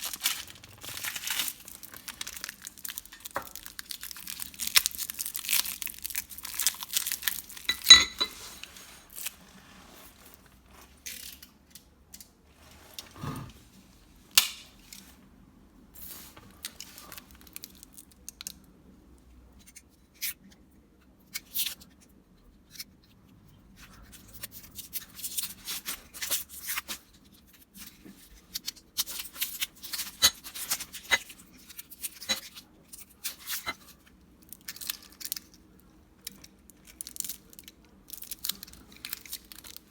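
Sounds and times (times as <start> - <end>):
scrapes at a workbench: 7.7 - 11.0, 12.5 - 13.9.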